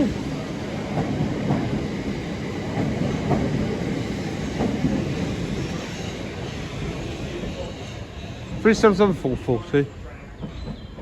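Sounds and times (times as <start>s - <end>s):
train rail rumble: 0.0s - 11.0s.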